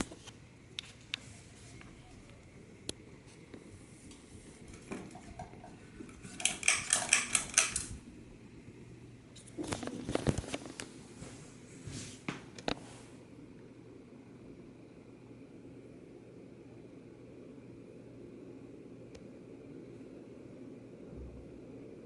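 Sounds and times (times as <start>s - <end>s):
ceiling fan humming: 0.0s - 22.0s
metallic clinking and rattling: 6.2s - 8.0s.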